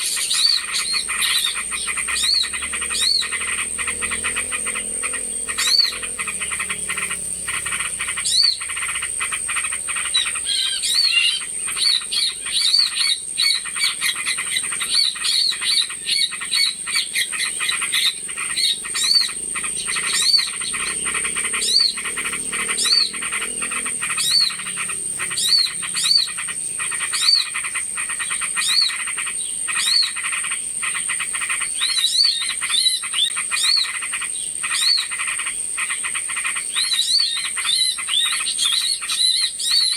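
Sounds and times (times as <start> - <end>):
high-pitched whine: 0.0 - 10.5
chorus of chattering birds: 0.0 - 39.9.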